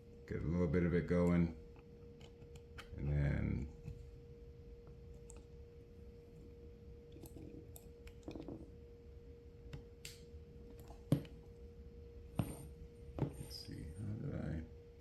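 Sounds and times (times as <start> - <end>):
small clicks and snaps: 9.7 - 11.3.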